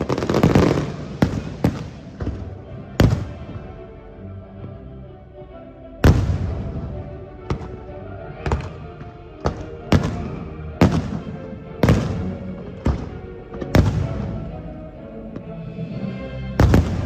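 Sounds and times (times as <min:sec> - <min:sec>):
fireworks bursting: 0:00.0 - 0:03.6, 0:08.4 - 0:14.5
music playing: 0:00.0 - 0:17.0.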